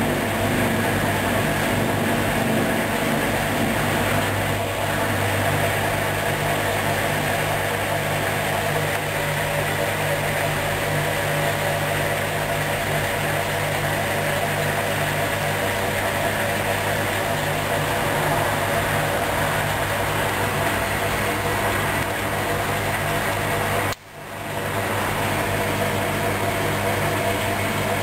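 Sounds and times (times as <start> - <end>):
washing machine humming: 0.0 - 28.0.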